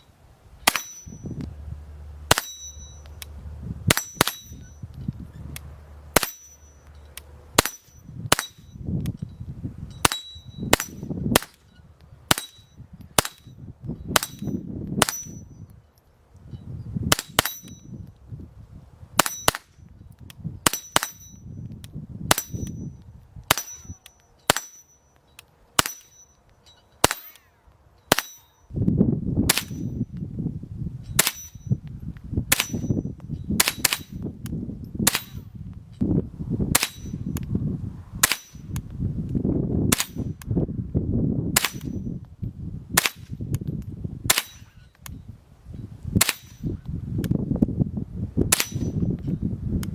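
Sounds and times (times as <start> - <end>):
rifle shots with ringing: 0.6 - 1.2, 2.3 - 3.2, 3.9 - 4.8, 6.1 - 6.8, 7.6 - 8.8, 12.3 - 15.5, 19.2 - 19.7, 20.6 - 21.4, 22.3 - 22.8, 23.5 - 25.0, 25.8 - 26.3, 27.0 - 28.6.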